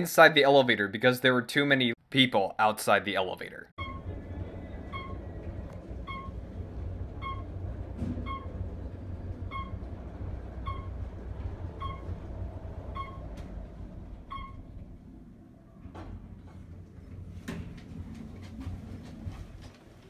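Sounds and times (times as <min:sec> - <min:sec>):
elevator electronic beep: 0:03.8 - 0:13.4, 0:14.2 - 0:14.8
elevator machinery rumble: 0:03.8 - 0:20.0.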